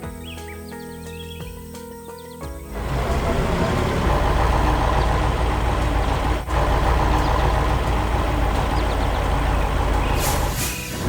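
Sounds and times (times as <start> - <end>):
heavy vehicle engine running: 2.7 - 11.0
short bursts of hiss: 10.0 - 11.0.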